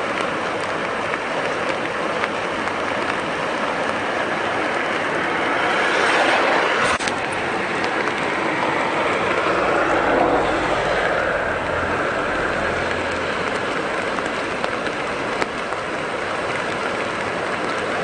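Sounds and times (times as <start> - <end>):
heavy rain: 0.0 - 18.0
river rushing: 0.0 - 18.0
low rumble: 4.8 - 8.0, 8.6 - 15.3.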